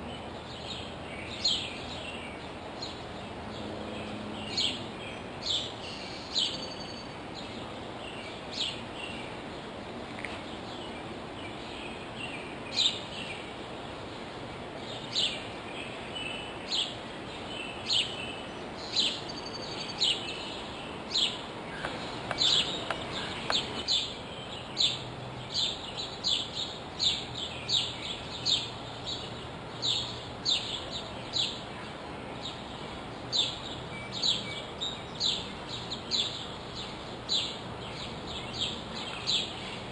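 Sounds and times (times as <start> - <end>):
outdoor background hiss: 0.0 - 39.9
bird chirp sweeping downward: 5.4 - 7.1, 18.8 - 24.1.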